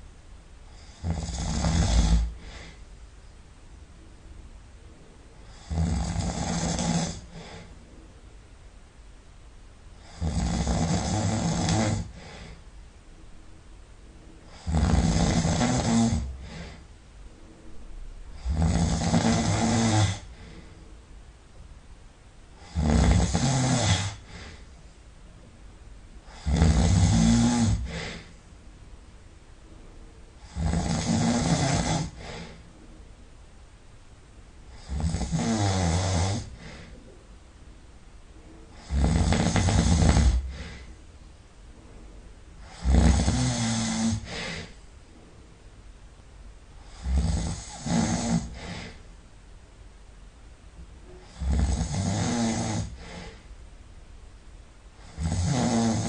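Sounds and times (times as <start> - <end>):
quiet breathing: 0.6 - 8.4, 9.9 - 21.7, 22.5 - 33.7, 34.6 - 49.3, 50.8 - 54.0
person snoring loudly: 0.7 - 2.8, 5.5 - 7.7, 10.0 - 12.4, 14.5 - 16.8, 18.3 - 20.4, 22.6 - 24.6, 26.3 - 28.3, 30.4 - 32.6, 34.7 - 36.9, 38.7 - 40.9, 42.6 - 44.7, 46.8 - 49.0, 51.2 - 53.4, 55.0 - 56.0.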